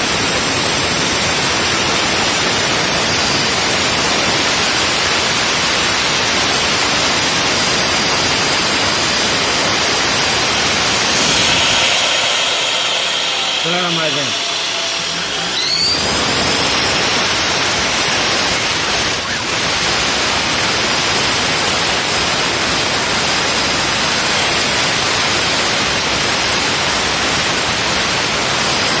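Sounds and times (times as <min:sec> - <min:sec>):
loud steady hiss: 0:00.0 - 0:29.0
turbo whistle: 0:08.0 - 0:21.2.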